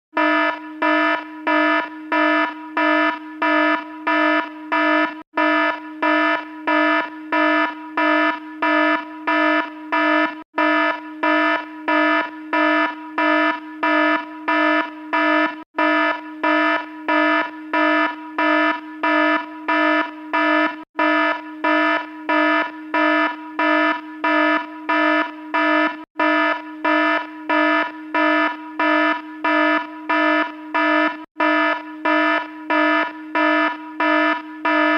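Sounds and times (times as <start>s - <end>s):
alarm pulsing buzzy tone: 0.1s - 34.9s.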